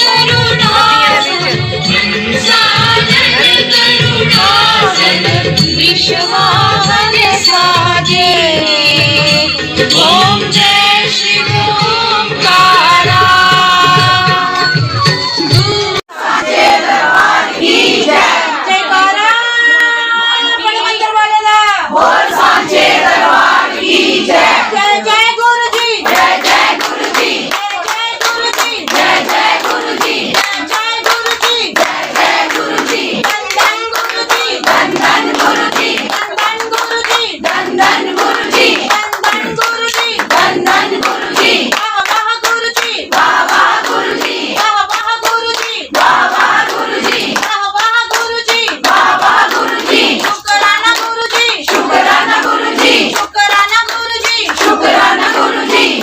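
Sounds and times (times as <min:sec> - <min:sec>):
group singing devotional song: 0:00.0 - 0:14.8, 0:16.1 - 0:21.2, 0:21.9 - 0:56.0
hands clapping: 0:25.7 - 0:56.0.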